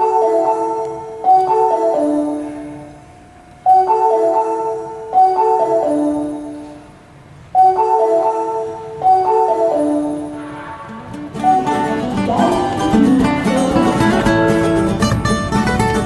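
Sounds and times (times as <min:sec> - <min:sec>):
station chime melody over speakers: 0:00.0 - 0:10.6, 0:11.2 - 0:14.5.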